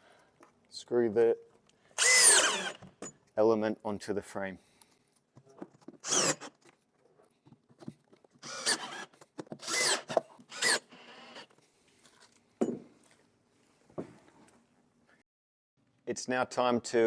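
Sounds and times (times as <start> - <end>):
cordless drill driving screws: 2.0 - 3.0, 6.0 - 6.5, 8.4 - 11.5.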